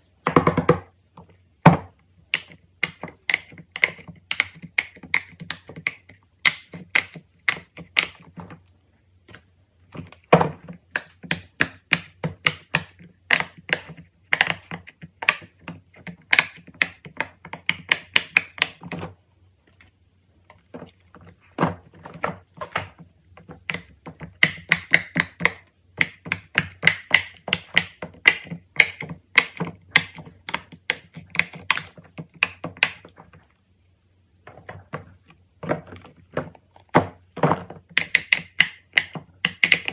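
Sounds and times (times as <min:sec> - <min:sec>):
fidget toys clicking: 0:37.9 - 0:39.9.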